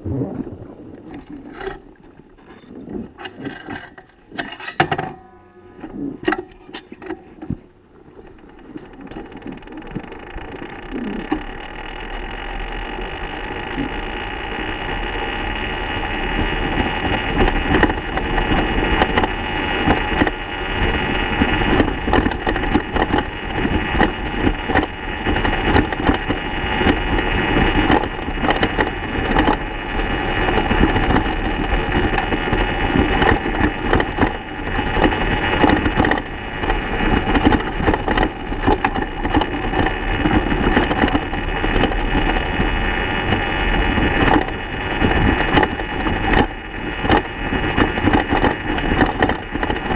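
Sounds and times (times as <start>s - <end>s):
wind noise: 0.0s - 4.4s
tyre noise: 0.0s - 11.5s.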